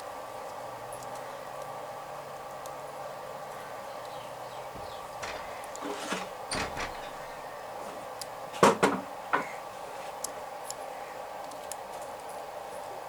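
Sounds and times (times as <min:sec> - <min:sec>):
steady background hum: 0:00.0 - 0:13.0
sharp knocks: 0:04.8 - 0:07.2.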